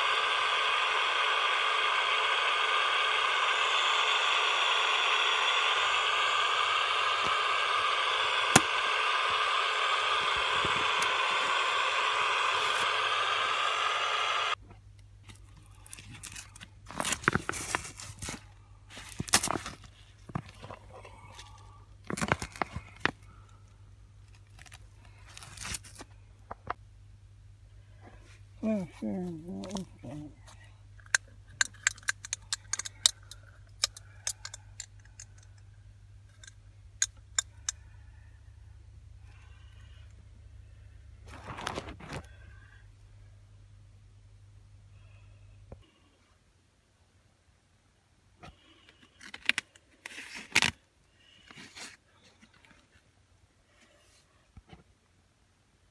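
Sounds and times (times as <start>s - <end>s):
steady hiss: 0.0s - 14.6s
steady low hum: 0.0s - 50.0s
video deck control clicks: 8.5s - 8.8s.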